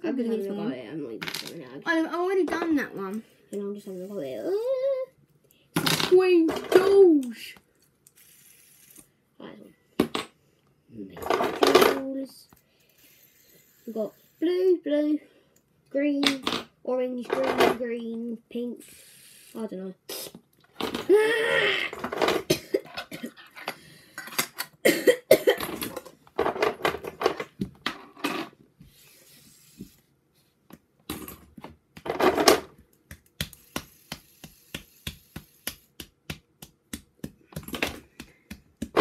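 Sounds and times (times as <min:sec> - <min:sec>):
fidget spinners clicking and clattering: 0:05.8 - 0:09.2, 0:11.2 - 0:14.8, 0:31.6 - 0:39.0
quick runs of ticks: 0:33.3 - 0:36.0.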